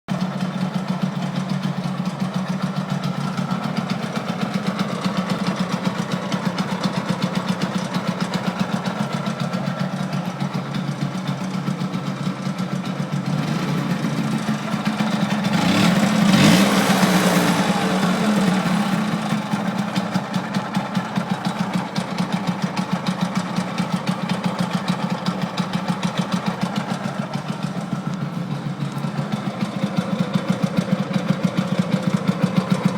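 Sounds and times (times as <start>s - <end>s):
scooter engine idling and revving: 0.1s - 32.9s.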